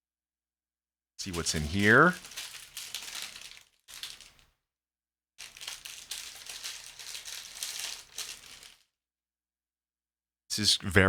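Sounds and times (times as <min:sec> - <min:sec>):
packing material rustling: 0:01.2 - 0:04.5, 0:05.4 - 0:08.9.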